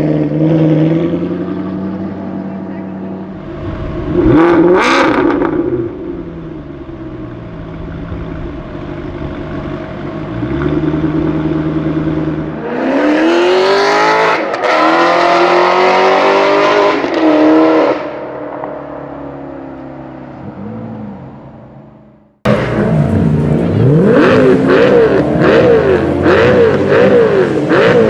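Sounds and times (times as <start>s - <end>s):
car engine revving and accelerating: 0.0s - 18.6s, 22.5s - 28.0s.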